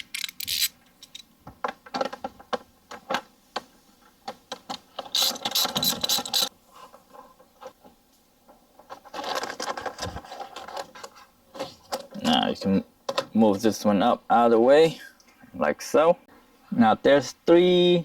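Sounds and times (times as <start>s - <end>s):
socket ratchet clicking: 0.0s - 1.2s, 5.1s - 6.5s.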